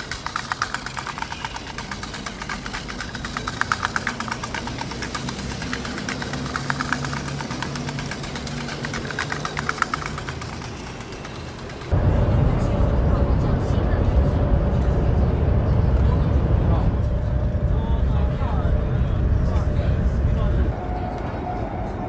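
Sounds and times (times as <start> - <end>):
engine rattling clatter: 0.0 - 16.4
steady low hum: 0.0 - 22.0.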